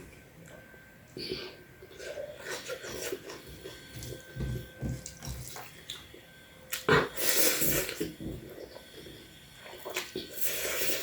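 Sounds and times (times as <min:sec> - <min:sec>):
soft chewing: 0:00.0 - 0:11.0
loud wet slurp: 0:06.8 - 0:09.0, 0:09.6 - 0:11.0.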